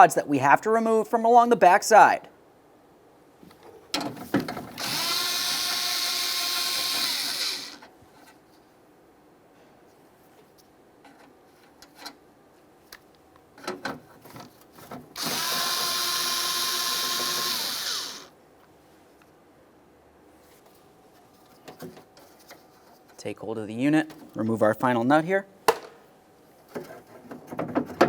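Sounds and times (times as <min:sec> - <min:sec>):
power driver motor whine: 0:04.8 - 0:07.8, 0:15.2 - 0:18.3.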